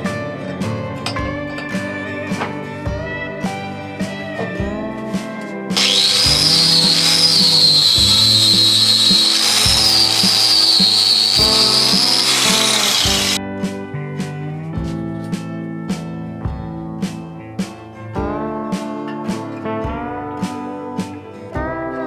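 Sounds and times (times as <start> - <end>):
guitar background music: 0.0 - 22.0
power tool whining on metal: 5.8 - 13.4.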